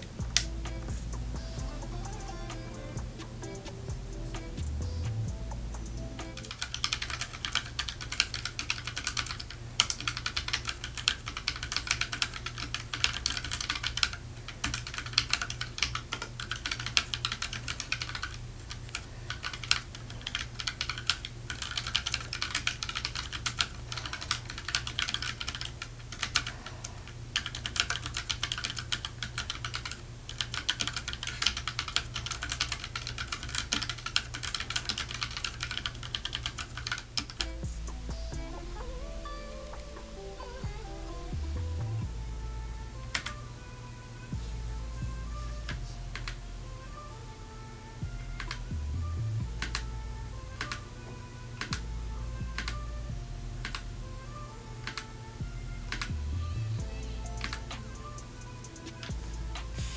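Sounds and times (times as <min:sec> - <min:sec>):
fast typing on mechanical keyboard: 0:06.2 - 0:37.6, 0:43.1 - 0:43.4, 0:45.7 - 0:46.4, 0:48.4 - 0:48.7, 0:49.6 - 0:49.8, 0:50.6 - 0:50.8, 0:52.6 - 0:52.8, 0:53.6 - 0:53.8, 0:54.8 - 0:55.1, 0:55.9 - 0:56.2, 0:57.4 - 0:59.6.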